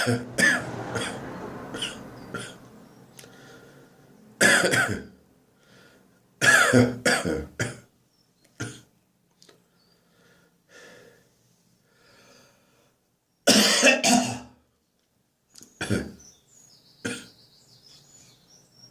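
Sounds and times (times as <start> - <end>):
dry hacking cough: 0.0 - 1.2, 4.4 - 5.2, 6.4 - 7.9, 8.6 - 8.9, 13.5 - 14.6, 15.8 - 16.2, 17.0 - 17.4
faint breaths: 3.1 - 4.2, 5.5 - 6.3, 9.5 - 13.1.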